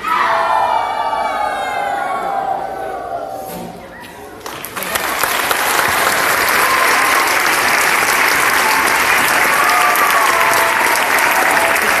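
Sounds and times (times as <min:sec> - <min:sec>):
audience applause: 0:04.4 - 0:12.0.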